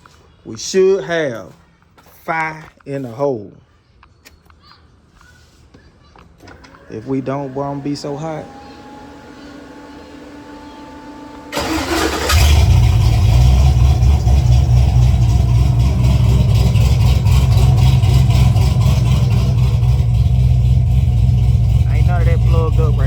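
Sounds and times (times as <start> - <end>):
engine cranking on starter: 6.5 - 23.0
engine running with low rumble: 7.0 - 23.0.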